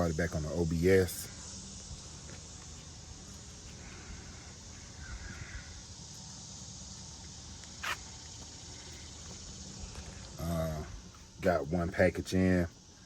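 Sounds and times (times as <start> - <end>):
insects chirring: 0.0 - 13.0
faint bird call: 3.8 - 5.8.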